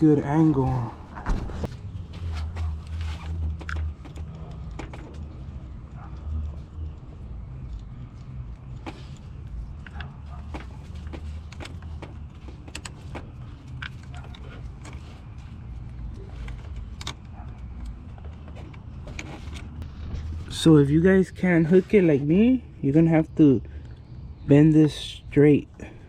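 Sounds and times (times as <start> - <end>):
steady low rumble: 19.7 - 22.8.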